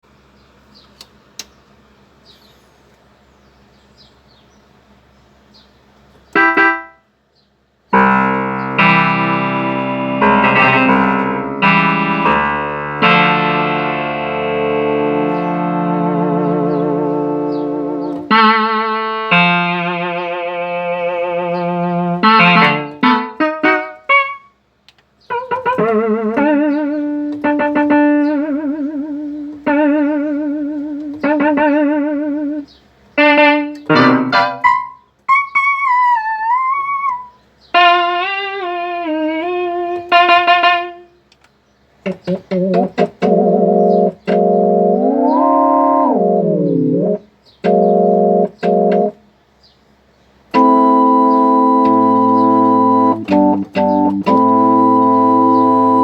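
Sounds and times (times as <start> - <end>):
clicks: 0.8 - 1.6
plucked synthesizer notes: 6.3 - 7.0, 7.9 - 24.5, 25.3 - 41.0, 42.0 - 49.2, 50.5 - 56.0
sustained synthesizer chords: 6.4 - 7.0, 8.0 - 24.3, 42.0 - 49.2, 50.5 - 56.0.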